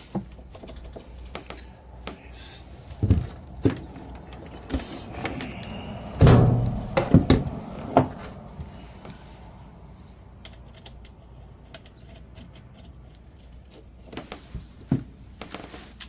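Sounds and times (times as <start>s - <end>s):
sharp knocks of tools: 5.0s - 8.3s.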